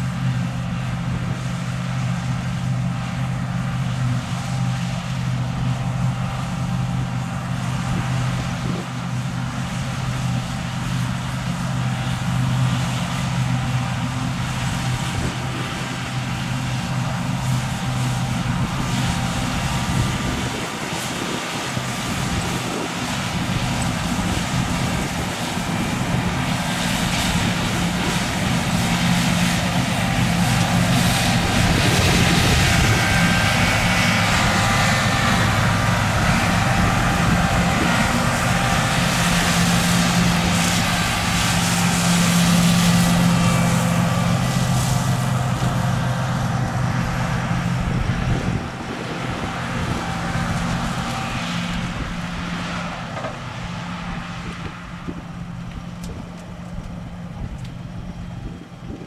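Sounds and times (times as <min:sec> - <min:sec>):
combine harvester engine hum: 0:00.0 - 0:59.0
threshing machinery rushing: 0:13.8 - 0:57.6.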